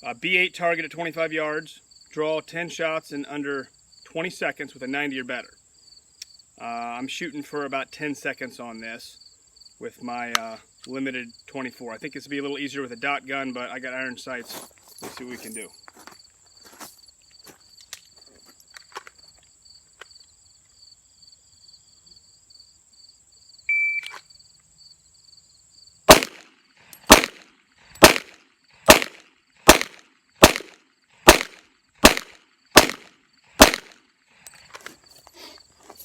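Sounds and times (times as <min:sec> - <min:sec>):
insects chirping: 0:00.0 - 0:36.0
shot timer beep: 0:23.7 - 0:24.2
pistol shots: 0:26.1 - 0:34.0.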